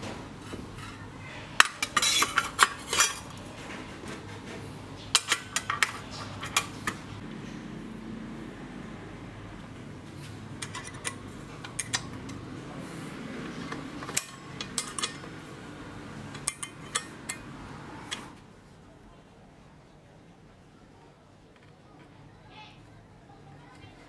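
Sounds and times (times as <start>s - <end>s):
metal parts clinking: 1.6s - 3.4s, 13.7s - 15.3s.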